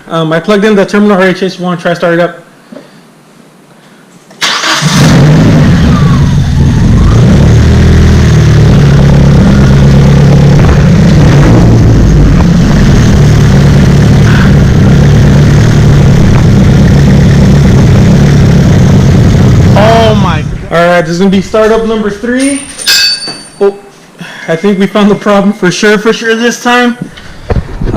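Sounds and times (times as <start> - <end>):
car engine idling: 4.6 - 22.2.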